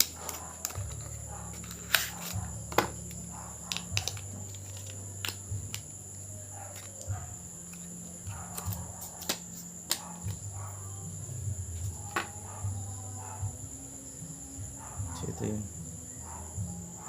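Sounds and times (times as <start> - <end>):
laptop parts clicking and tapping: 0.0 - 5.8, 6.6 - 10.4
low hum: 0.0 - 17.0.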